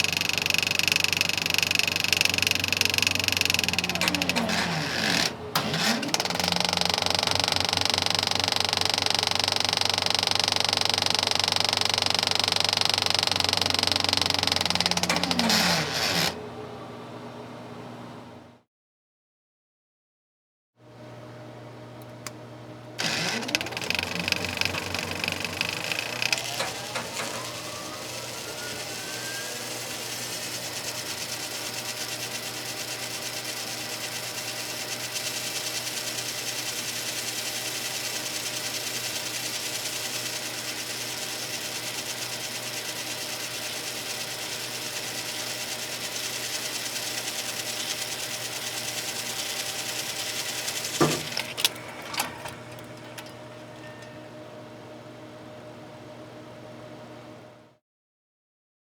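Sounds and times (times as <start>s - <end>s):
projector stopping clunk: 0.0s - 16.3s, 23.0s - 33.8s, 50.6s - 54.2s
film projector running: 0.0s - 16.6s, 22.0s - 54.1s
projector hum: 0.0s - 18.4s, 21.0s - 32.1s.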